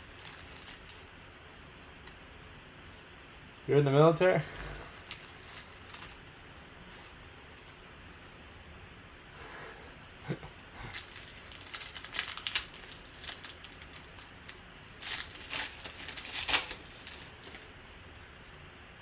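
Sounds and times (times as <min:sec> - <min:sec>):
card pack wrapper crinkling: 0:00.0 - 0:01.2, 0:05.0 - 0:06.2, 0:10.9 - 0:17.7.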